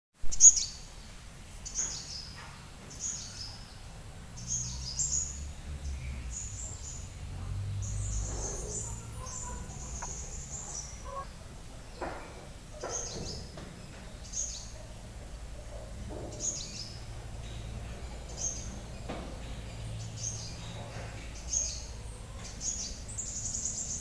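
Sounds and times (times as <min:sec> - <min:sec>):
small bird chirping: 0:01.6 - 0:14.9.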